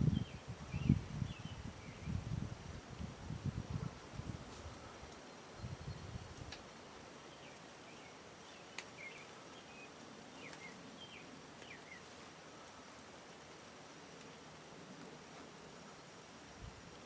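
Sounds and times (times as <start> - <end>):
steady hiss: 0.0 - 17.0
songbird chirps: 5.1 - 12.8.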